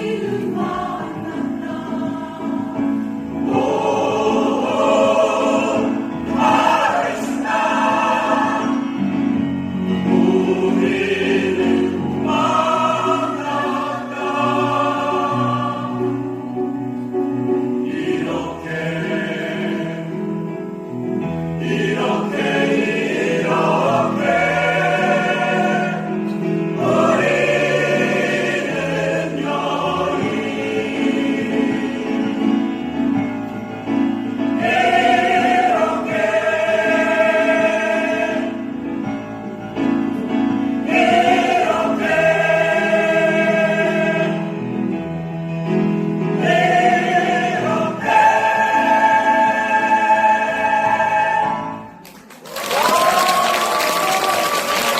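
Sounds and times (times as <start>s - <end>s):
choir singing: 0.0s - 54.9s.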